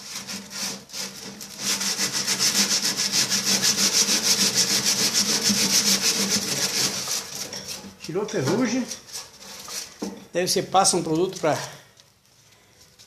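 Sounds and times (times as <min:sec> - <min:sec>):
abrasive scrubbing metal: 0:00.0 - 0:09.8.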